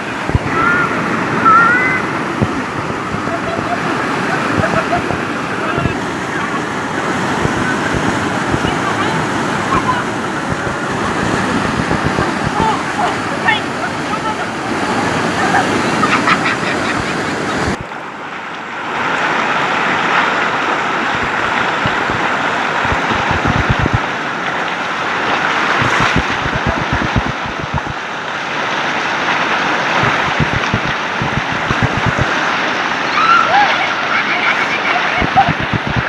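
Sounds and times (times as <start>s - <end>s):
rushing water: 0.0s - 36.0s
wind buffeting microphone: 0.1s - 13.9s, 20.9s - 24.2s, 25.5s - 28.0s, 30.0s - 32.4s, 35.2s - 36.0s.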